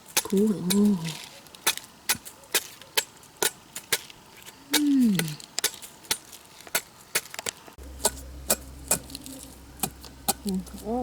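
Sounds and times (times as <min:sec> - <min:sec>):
low rumble: 0:07.8 - 0:11.0.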